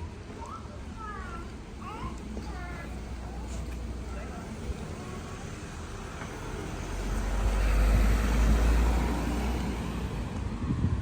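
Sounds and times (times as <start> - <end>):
vehicle passing by: 4.0 - 11.0.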